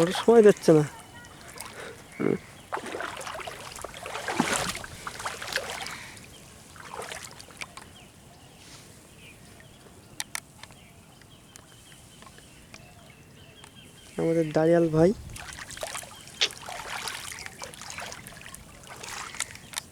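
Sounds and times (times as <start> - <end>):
water splashing: 0.0 - 8.0, 14.2 - 19.9.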